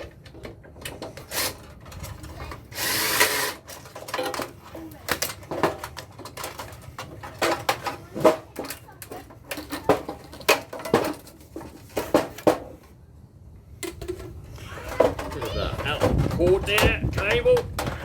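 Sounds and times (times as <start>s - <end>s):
metal parts clinking and knocking: 0.0s - 12.5s.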